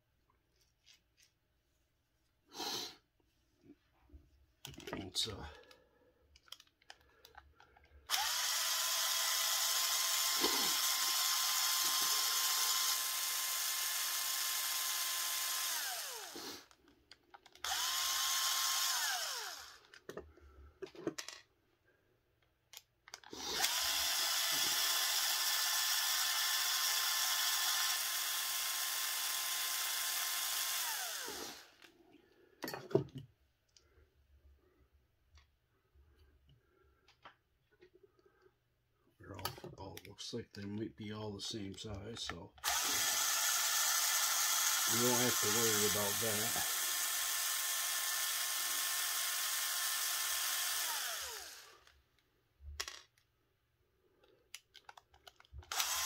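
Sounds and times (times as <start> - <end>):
cordless power screwdriver whine: 8.1 - 16.7, 17.6 - 19.9, 23.2 - 31.9, 42.6 - 51.9, 55.6 - 56.0.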